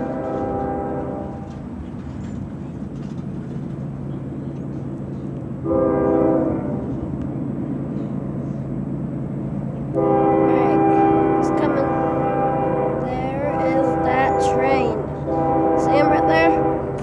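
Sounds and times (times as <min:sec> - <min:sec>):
locomotive air horn: 0:00.0 - 0:01.6, 0:05.6 - 0:07.1, 0:09.9 - 0:17.0
locomotive low drone: 0:00.0 - 0:17.0.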